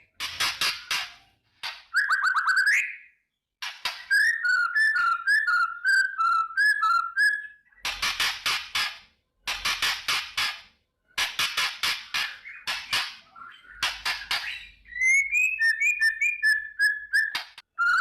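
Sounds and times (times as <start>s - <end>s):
bird whistled notes: 1.9s - 3.1s, 4.0s - 7.6s, 14.5s - 18.0s.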